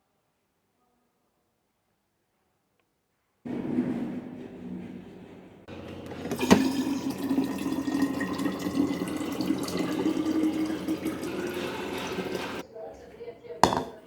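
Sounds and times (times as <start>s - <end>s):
tap water running into sink: 5.7s - 12.6s.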